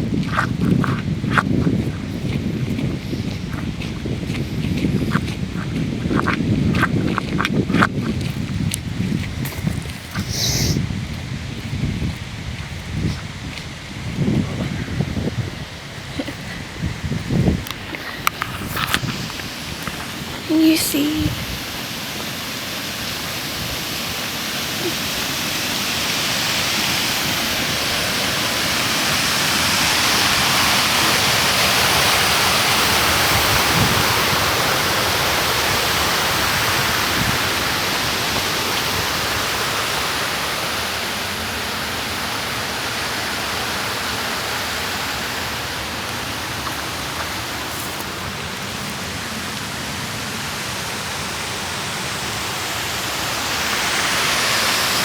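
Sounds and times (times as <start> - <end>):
running water rushing: 0.0 - 55.0.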